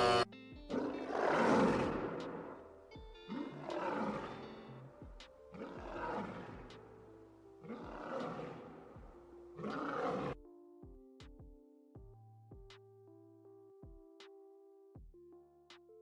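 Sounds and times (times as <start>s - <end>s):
animal roaring: 0.0s - 2.7s, 3.3s - 4.8s, 5.5s - 6.7s, 7.6s - 9.0s, 9.6s - 10.4s
background music: 0.0s - 16.0s.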